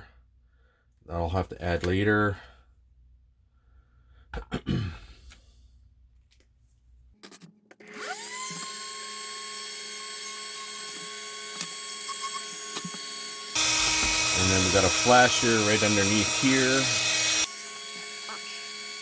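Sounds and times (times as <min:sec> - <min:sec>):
small electric drill drilling plastic: 0:07.8 - 0:19.0.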